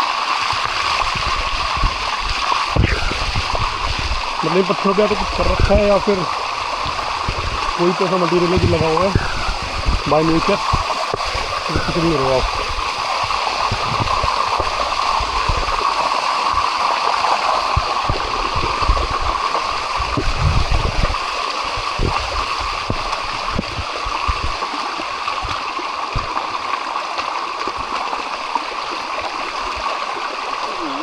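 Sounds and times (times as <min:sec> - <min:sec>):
waterfall rushing over rocks: 0:00.0 - 0:31.0
low thuds and rumbles: 0:01.0 - 0:07.8, 0:08.4 - 0:15.9, 0:17.7 - 0:24.7, 0:25.3 - 0:26.5.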